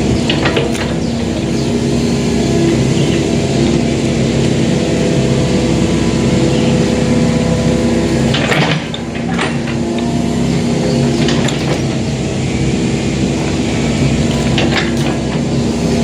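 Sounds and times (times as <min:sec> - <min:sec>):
engine running: 0:00.0 - 0:16.0
short knocks or clanks: 0:08.2 - 0:10.1, 0:11.0 - 0:12.0, 0:14.3 - 0:15.5.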